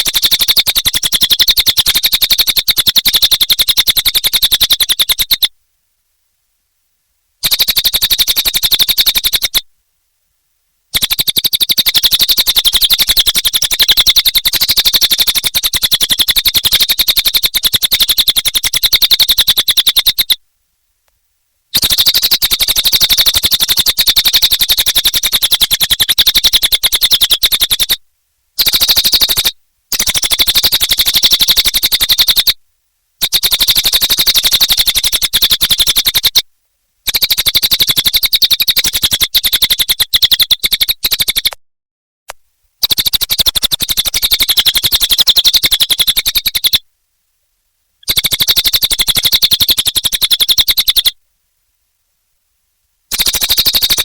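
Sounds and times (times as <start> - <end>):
songbird chattering trill: 0.0 - 5.5, 7.4 - 9.6, 11.0 - 20.4, 21.7 - 28.0, 28.6 - 32.6, 33.2 - 36.4, 37.1 - 41.6, 42.8 - 46.8, 48.0 - 51.1, 53.1 - 54.0.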